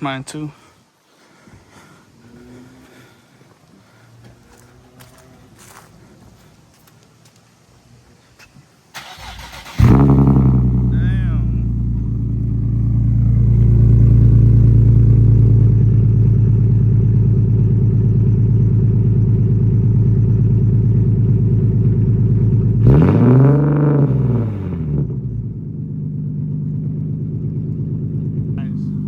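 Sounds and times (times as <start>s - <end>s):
car engine idling: 8.8s - 29.0s
engine revving: 9.0s - 16.6s, 21.3s - 25.9s.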